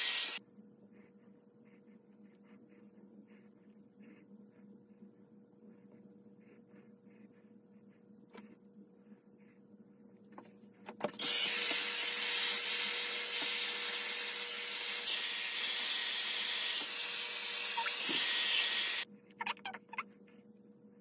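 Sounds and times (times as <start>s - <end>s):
hair dryer blowing: 0.0s - 0.4s, 11.2s - 19.1s.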